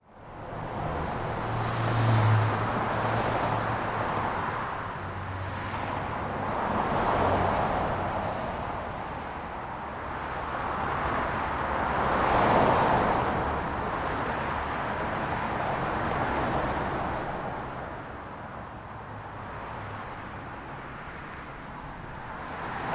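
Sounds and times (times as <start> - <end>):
vehicles passing: 0.1 - 22.9.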